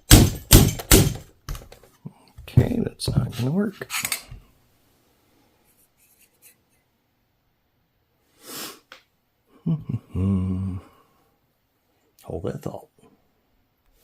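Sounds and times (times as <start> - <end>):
man humming hmm: 9.5 - 11.2
man sighing: 9.5 - 11.2.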